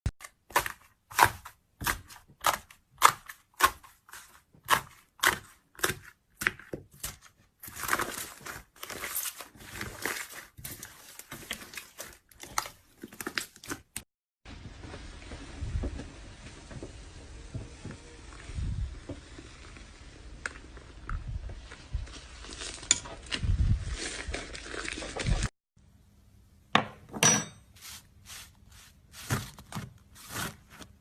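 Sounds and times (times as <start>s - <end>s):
crisp crunching and crackling: 0.6s - 14.0s, 20.4s - 25.5s.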